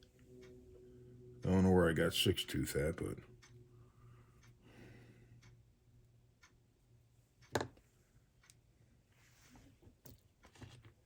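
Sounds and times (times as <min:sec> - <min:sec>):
clock ticking faintly: 0:00.3 - 0:03.6, 0:04.4 - 0:07.6.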